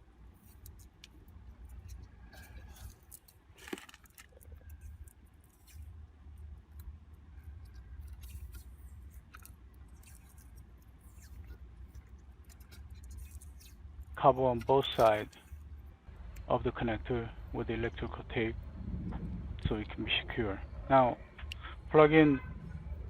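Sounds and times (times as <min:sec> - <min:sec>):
steady low hum: 0:00.0 - 0:23.0
electrical tape peeling rustles: 0:00.3 - 0:15.9.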